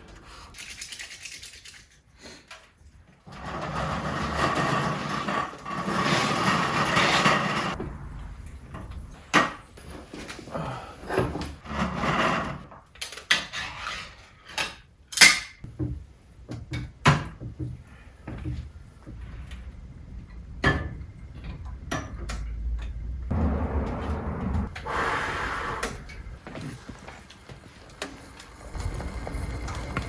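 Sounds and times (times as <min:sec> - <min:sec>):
steady noise: 0:23.3 - 0:30.0.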